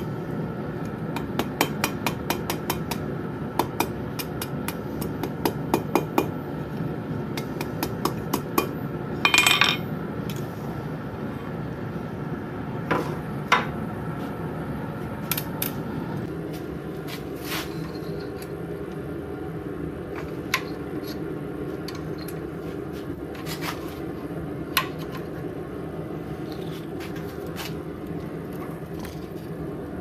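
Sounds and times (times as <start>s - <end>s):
hammer striking steel: 1.2s - 3.0s.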